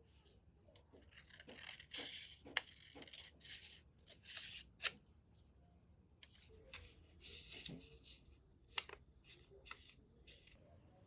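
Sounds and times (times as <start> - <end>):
scissors cutting paper: 1.0 - 5.0.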